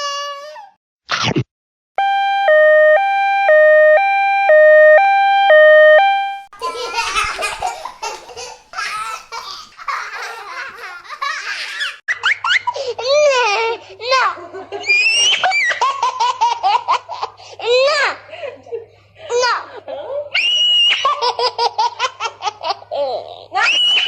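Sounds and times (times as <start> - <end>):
baby laughing and squealing: 6.6 - 13.2.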